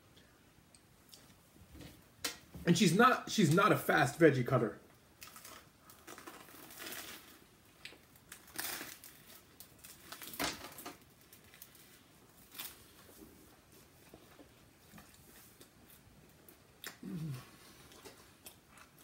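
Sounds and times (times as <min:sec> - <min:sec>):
crunchy chewing: 0:14.1 - 0:19.0.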